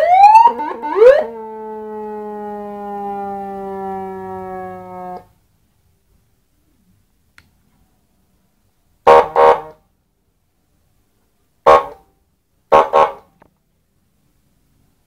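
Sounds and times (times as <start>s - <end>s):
siren horn honks: 0.0s - 5.4s, 9.1s - 9.8s.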